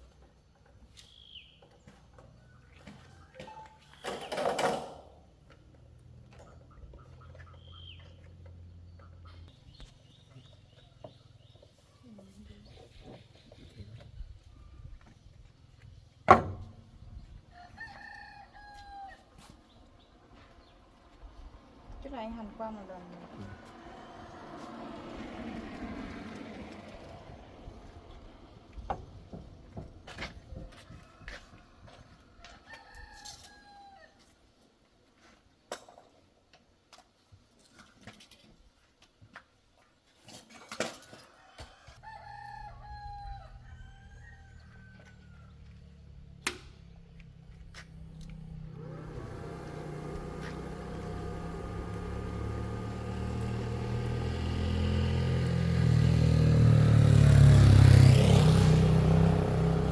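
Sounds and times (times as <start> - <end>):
rooster crowing: 17.5 - 19.4, 30.7 - 34.2, 41.4 - 45.9
engine running: 20.4 - 29.8, 45.5 - 59.9.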